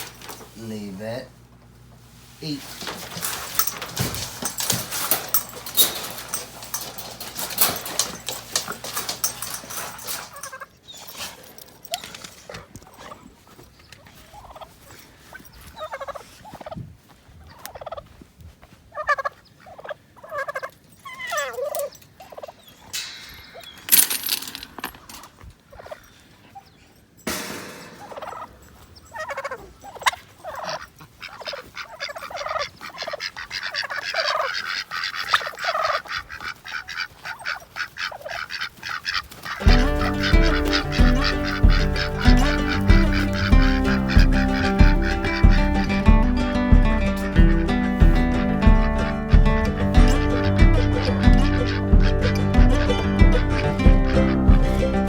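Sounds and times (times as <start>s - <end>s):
rustling and clicking: 2.6s - 15.8s, 21.3s - 25.9s, 27.2s - 55.0s
turkeys gobbling: 14.0s - 16.8s, 17.4s - 18.2s, 18.9s - 23.6s, 27.3s - 55.0s.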